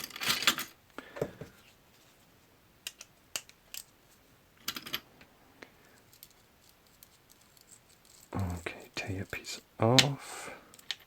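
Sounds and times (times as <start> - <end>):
metal lock parts clicking: 2.8 - 3.9, 9.0 - 11.0.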